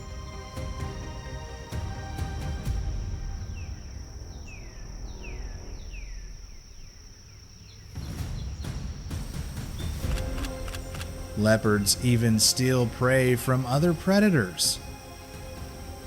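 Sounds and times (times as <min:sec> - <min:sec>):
low rumble: 0:02.8 - 0:09.1
bird whistling falling notes: 0:03.1 - 0:11.0.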